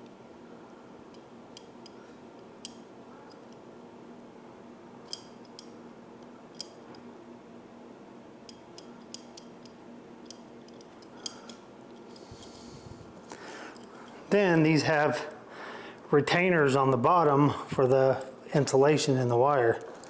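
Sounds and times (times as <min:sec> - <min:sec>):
steady low hum: 0:00.0 - 0:20.0
faint wire clicks: 0:05.1 - 0:07.1, 0:08.4 - 0:14.2.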